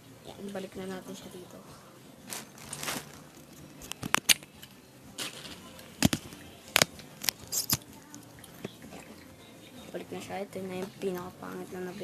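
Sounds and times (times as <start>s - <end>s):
soft packaging rustling: 2.2s - 9.2s.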